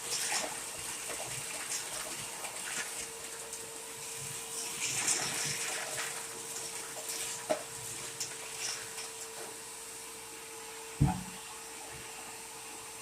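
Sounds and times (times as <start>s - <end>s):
vacuum motor whine: 9.1s - 13.0s
loud thump: 11.0s - 11.4s.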